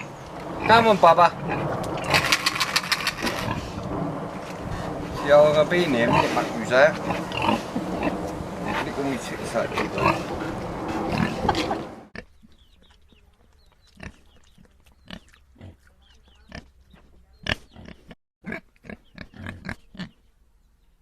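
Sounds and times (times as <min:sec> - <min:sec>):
rush of noise: 0:00.0 - 0:12.1
pigs grunting: 0:00.0 - 0:12.4, 0:13.8 - 0:20.2.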